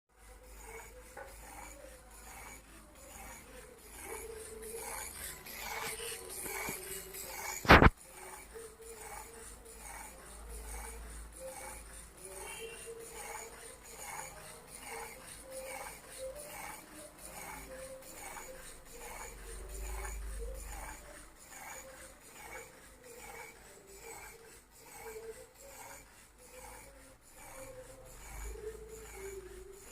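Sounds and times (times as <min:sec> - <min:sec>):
plastic parts rubbing and scraping: 0:00.2 - 0:29.9
plastic mechanism rubbing and clicking: 0:00.6 - 0:14.2.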